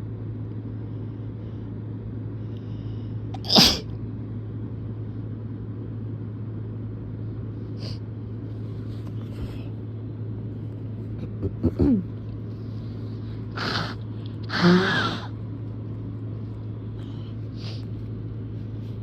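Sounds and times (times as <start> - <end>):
steady low hum: 0.0 - 19.0
person sneezing: 3.4 - 3.9.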